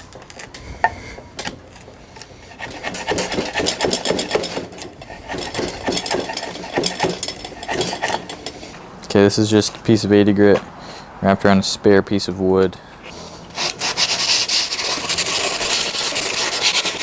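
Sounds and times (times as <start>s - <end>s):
sandpaper scratching wood: 2.5s - 6.9s, 13.6s - 17.0s.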